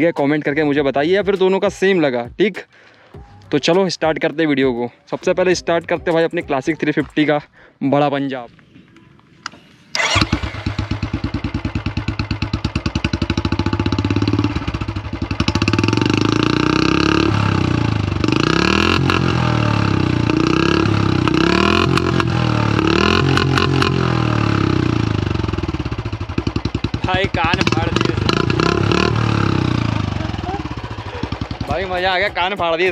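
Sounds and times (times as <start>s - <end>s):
motorcycle engine revving: 8.6s - 32.9s
motorcycle engine starting and idling: 8.6s - 32.9s.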